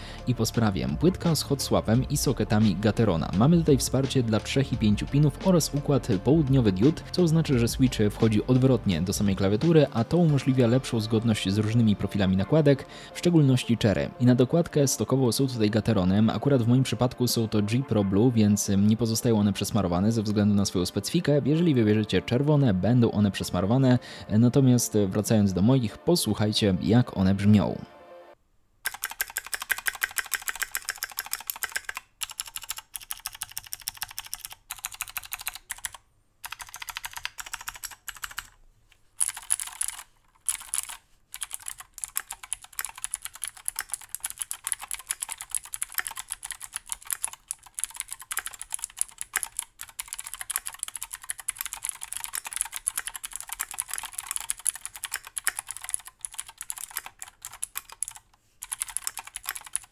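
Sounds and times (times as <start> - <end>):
clicky mechanical keyboard typing: 28.9 - 38.6, 39.2 - 59.9.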